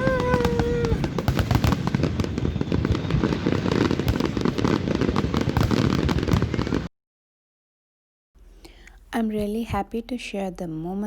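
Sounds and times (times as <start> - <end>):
fireworks crackling and banging: 0.0 - 6.9.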